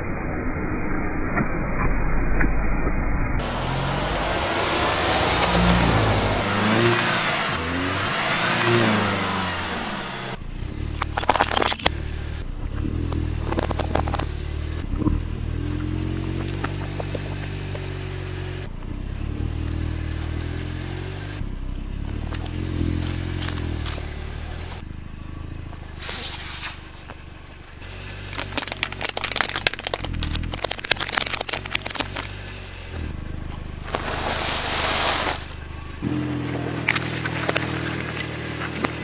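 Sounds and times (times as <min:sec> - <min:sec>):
car engine running: 0:03.4 - 0:39.0
bursts of hiss: 0:26.0 - 0:27.0, 0:33.8 - 0:35.6
rapid crackling and snapping: 0:28.2 - 0:32.4.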